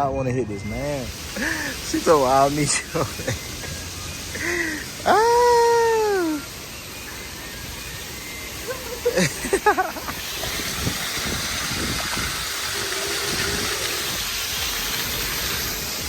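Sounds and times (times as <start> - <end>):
road noise: 0.0 - 16.0
wind rushing over microphone: 10.2 - 16.0.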